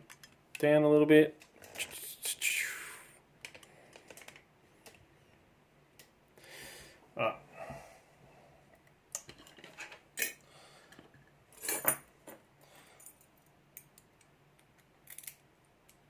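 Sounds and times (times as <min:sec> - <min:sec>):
padlock parts clinking: 0:13.0 - 0:15.4.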